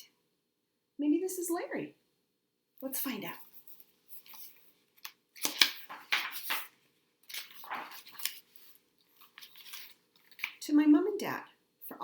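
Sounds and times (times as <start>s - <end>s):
paper pages rustling: 3.3s - 10.6s
book cover snapping: 5.0s - 6.7s.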